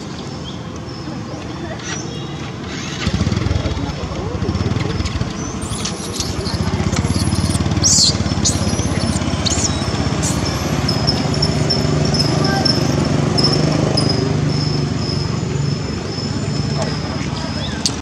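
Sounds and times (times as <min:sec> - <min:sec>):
small engine running: 0:02.5 - 0:18.0
high-pitched chirps and squeaks: 0:05.4 - 0:17.0.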